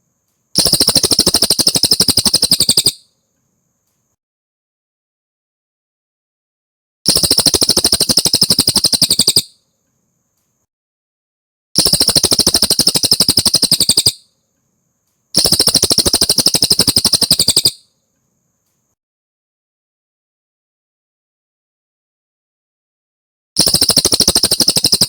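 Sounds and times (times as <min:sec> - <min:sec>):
bird trilling: 0:00.6 - 0:03.0, 0:07.2 - 0:09.5, 0:11.8 - 0:14.3, 0:15.4 - 0:17.8.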